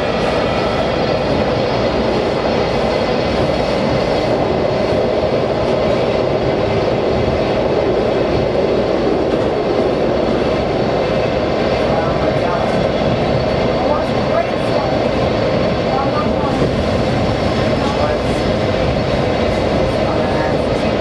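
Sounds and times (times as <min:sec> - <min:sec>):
rumble of wheels on rail: 0:00.0 - 0:21.0.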